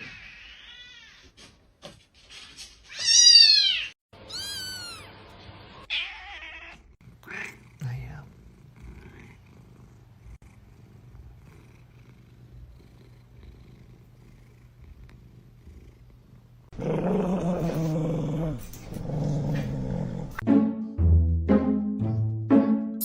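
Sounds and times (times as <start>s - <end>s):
cat purring: 6.8s - 20.4s.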